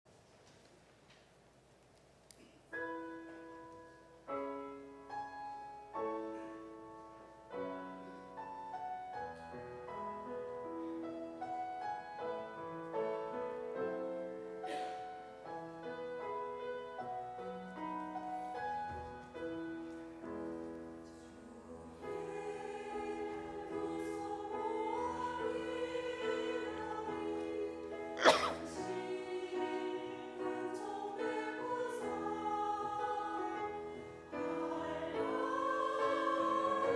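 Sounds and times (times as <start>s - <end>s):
slow piano melody: 2.7s - 36.9s
choir singing: 19.6s - 36.9s.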